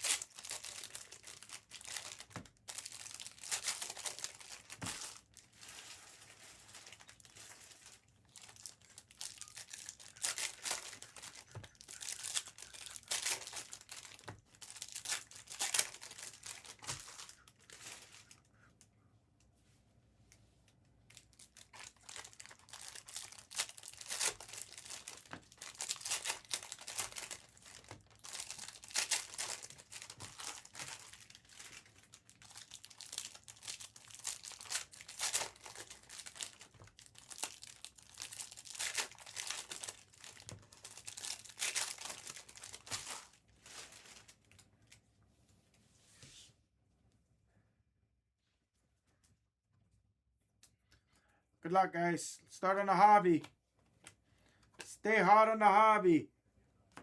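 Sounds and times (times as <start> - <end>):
wrappers tearing and crinkling: 0.0 - 18.5, 21.1 - 44.6.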